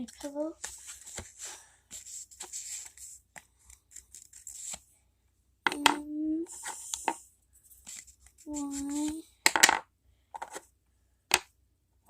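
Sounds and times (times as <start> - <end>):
marker scratching on paper: 0.0 - 3.2, 3.9 - 4.8, 6.5 - 9.2.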